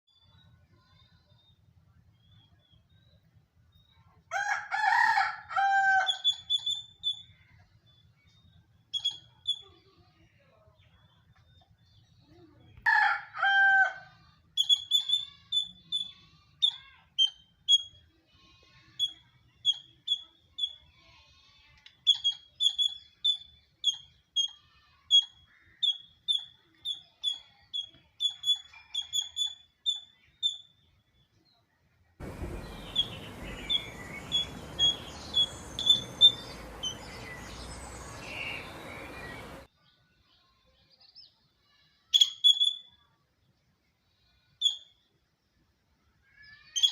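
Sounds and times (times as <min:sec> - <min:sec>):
squirrel chirping: 0:06.1 - 0:07.3, 0:08.9 - 0:09.6, 0:14.6 - 0:16.2, 0:22.0 - 0:24.5, 0:25.1 - 0:30.7, 0:32.2 - 0:39.7, 0:42.2 - 0:42.8
steady background hiss: 0:32.2 - 0:39.7.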